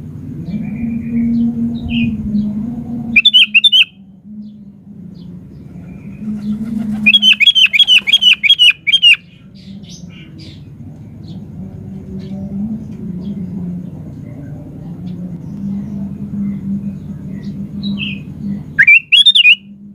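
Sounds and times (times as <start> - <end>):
low steady hum: 0.0 - 19.9
bird singing quick repeated notes: 3.2 - 3.9, 7.0 - 9.2, 18.8 - 19.6.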